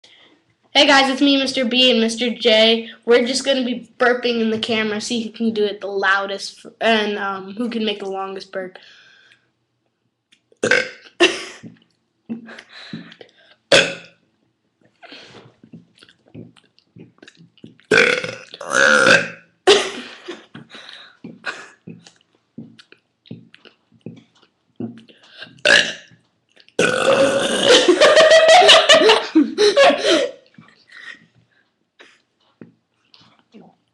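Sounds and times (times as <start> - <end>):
people burping: 10.6 - 11.4, 13.7 - 14.1, 17.9 - 19.8, 25.4 - 26.1, 26.8 - 28.0
loud laughter: 27.6 - 30.3.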